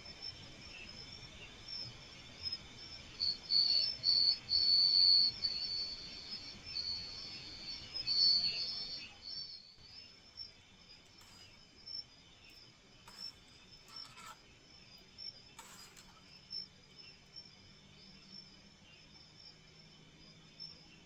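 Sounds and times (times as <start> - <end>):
crickets chirring: 0.0 - 21.0
short scratchy noises: 13.1 - 14.4, 15.6 - 16.3.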